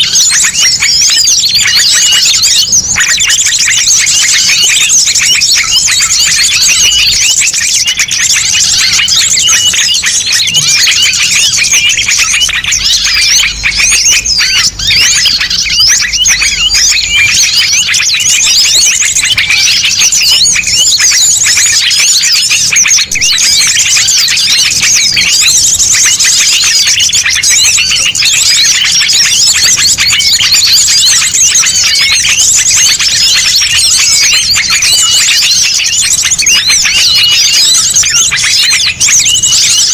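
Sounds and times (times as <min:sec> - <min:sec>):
chorus of small birds chirping: 0:00.0 - 0:39.9.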